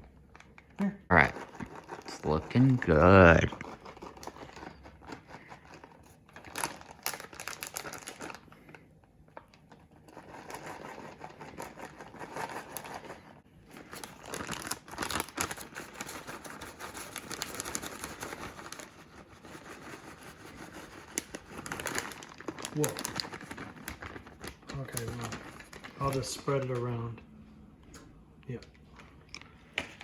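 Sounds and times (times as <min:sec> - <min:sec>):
plastic packaging crinkling: 0:00.2 - 0:10.0, 0:13.6 - 0:26.9.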